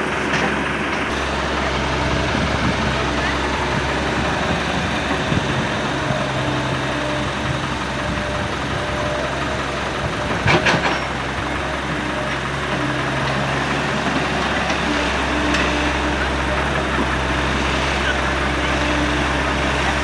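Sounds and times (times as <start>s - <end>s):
excavator engine running: 0.0s - 20.0s
loud clatter: 10.0s - 11.4s.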